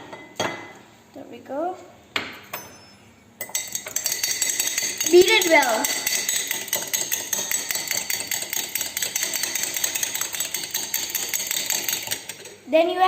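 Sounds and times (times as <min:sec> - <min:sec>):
egg being beaten by hand: 0:03.5 - 0:12.6.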